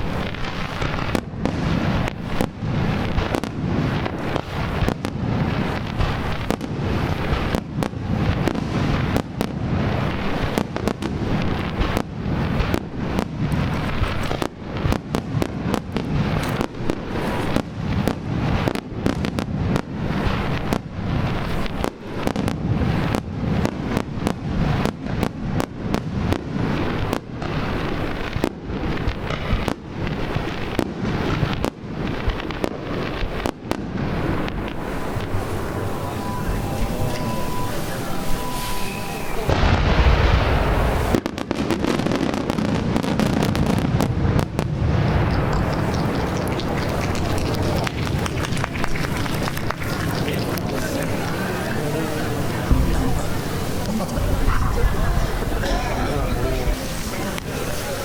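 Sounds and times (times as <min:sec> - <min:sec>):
firework shell bursts: 0:10.0 - 0:19.3, 0:44.9 - 0:58.0
low rumble: 0:44.8 - 0:51.3.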